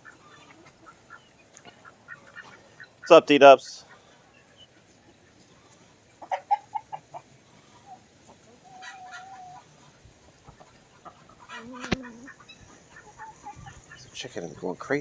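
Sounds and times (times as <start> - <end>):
chickens clucking: 0.0 - 15.0.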